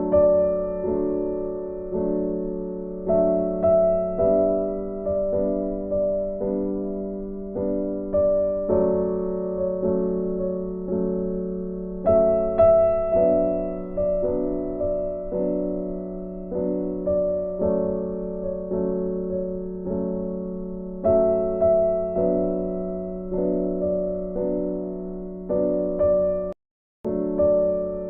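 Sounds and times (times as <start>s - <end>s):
slow gentle keyboard melody: 0.0s - 28.0s.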